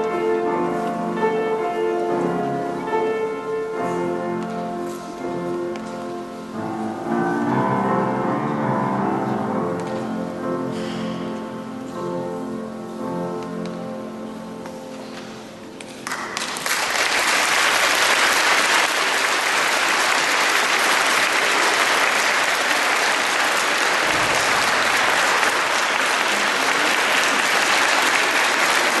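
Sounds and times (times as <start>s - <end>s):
choir singing: 6.6s - 8.2s
audience applause: 16.0s - 29.0s.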